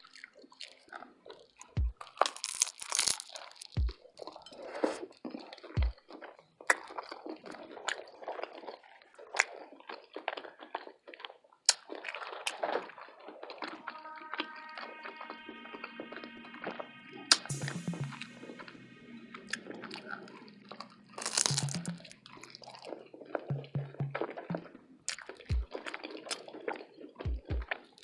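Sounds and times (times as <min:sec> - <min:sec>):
close-miked chewing and crunching: 0:00.0 - 0:13.8, 0:20.0 - 0:23.5, 0:24.2 - 0:28.0.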